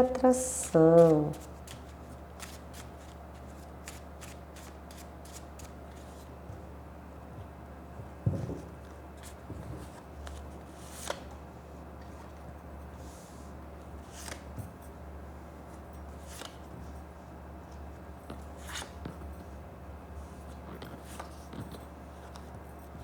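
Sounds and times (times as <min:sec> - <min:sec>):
low steady hum: 0:00.0 - 0:04.0
cards being shuffled: 0:00.6 - 0:06.3, 0:09.2 - 0:11.3, 0:14.1 - 0:14.5, 0:16.2 - 0:16.6.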